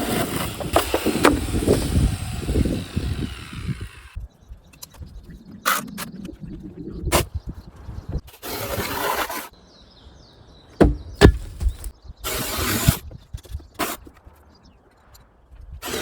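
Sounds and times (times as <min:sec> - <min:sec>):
sharp wood knocks: 0:10.8 - 0:11.9
wood scraping and sliding: 0:10.8 - 0:11.9.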